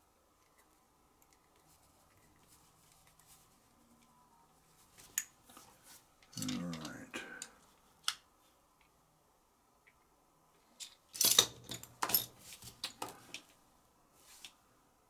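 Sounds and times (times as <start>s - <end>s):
small parts clicking and clattering: 6.2s - 8.2s, 10.6s - 13.5s.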